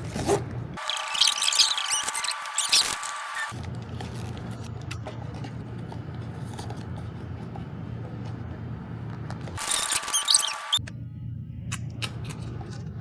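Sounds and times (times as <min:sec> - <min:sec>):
steady low hum: 0:02.8 - 0:09.7, 0:10.6 - 0:13.0.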